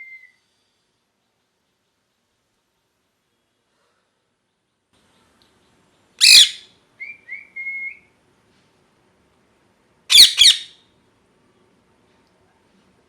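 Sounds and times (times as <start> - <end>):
parakeet squawking: 6.2 - 6.6, 10.1 - 10.8
parakeet whistled notes: 6.2 - 8.0, 10.1 - 10.7.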